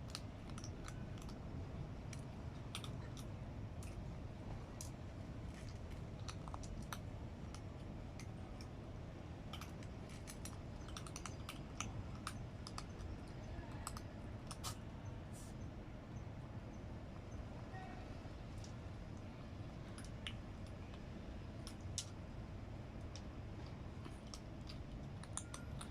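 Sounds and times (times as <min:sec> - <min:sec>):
cat crunching dry food: 0:00.0 - 0:01.5, 0:02.1 - 0:04.0, 0:04.6 - 0:08.7, 0:09.5 - 0:14.7, 0:23.2 - 0:25.9
low background rumble: 0:00.0 - 0:25.9.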